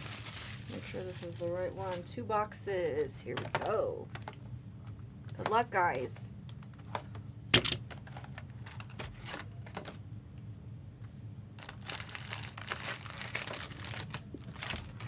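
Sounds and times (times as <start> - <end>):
plastic wrapping crinkling and tearing: 0.0 - 2.1, 11.6 - 15.0.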